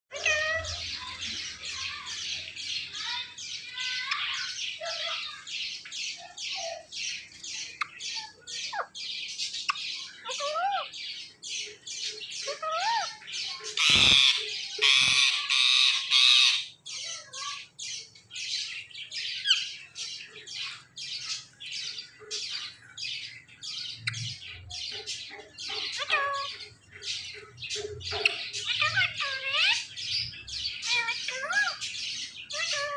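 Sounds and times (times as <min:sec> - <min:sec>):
parrot squawking calls: 0:00.1 - 0:05.5, 0:10.1 - 0:11.0, 0:12.4 - 0:17.6, 0:25.2 - 0:29.9, 0:30.7 - 0:32.9
parrot harsh screech: 0:13.8 - 0:16.7.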